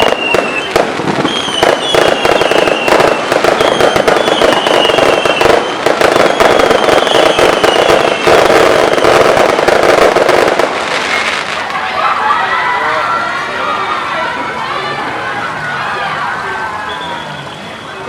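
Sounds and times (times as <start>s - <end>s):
firework whistles: 0.0s - 11.7s, 16.8s - 18.0s
fireworks crackling and banging: 0.0s - 13.6s.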